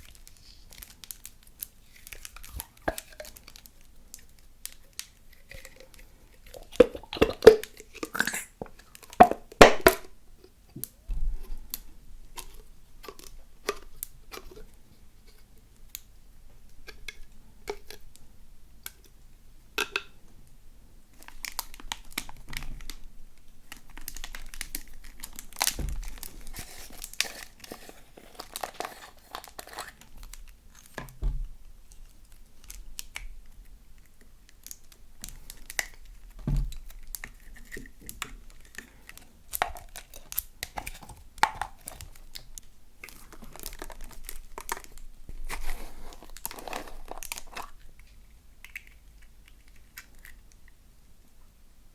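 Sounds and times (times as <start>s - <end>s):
crackling and popping clicks: 31.8s - 45.4s, 46.2s - 50.8s.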